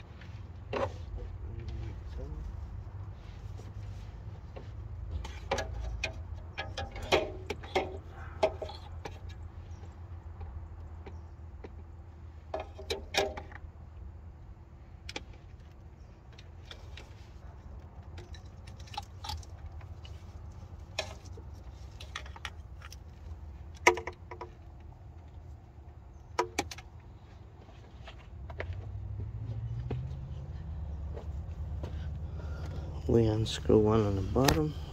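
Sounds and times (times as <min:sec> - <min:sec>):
steady low hum: 0:13.6 - 0:34.9.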